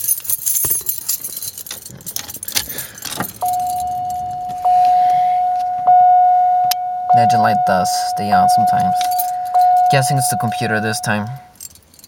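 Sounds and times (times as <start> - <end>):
car keys jangling and clicking: 0.0 - 6.3, 8.1 - 12.0
dashboard warning chime: 3.4 - 11.7.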